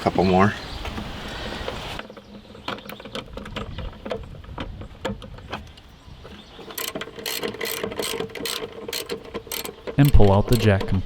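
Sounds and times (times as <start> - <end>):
socket ratchet clicking: 6.7 - 10.8.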